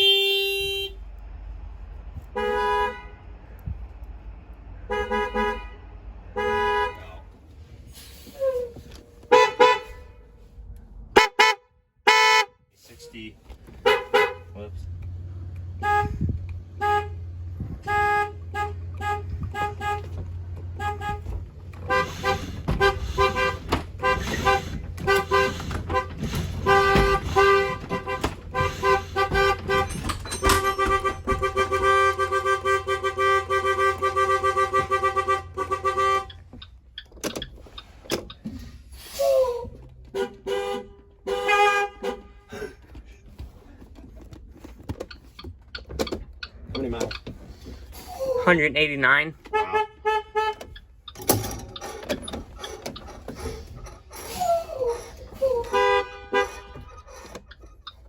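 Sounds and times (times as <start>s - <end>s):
school bus horn honking: 0.0s - 1.2s, 2.2s - 3.8s, 4.7s - 10.5s, 11.1s - 37.4s, 39.0s - 43.2s, 47.1s - 58.0s
low steady rumble: 12.9s - 44.8s.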